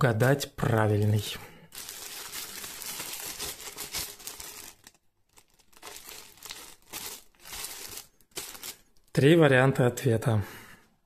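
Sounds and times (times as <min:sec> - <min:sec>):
plastic bag crinkling: 0:00.8 - 0:09.2.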